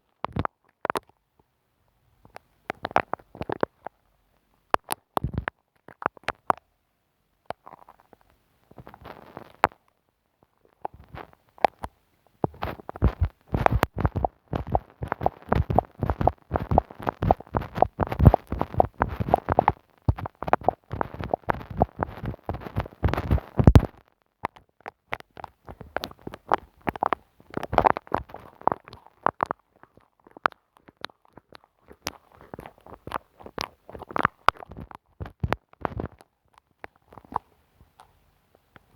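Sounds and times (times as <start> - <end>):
glue stick rubbing on microphone: 12.4 - 24.0.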